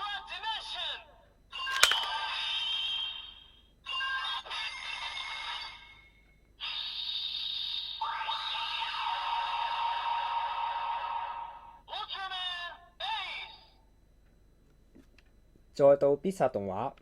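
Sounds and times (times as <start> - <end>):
sharp click: 1.7 - 2.1
toy electronic sound effects and music: 1.7 - 2.1.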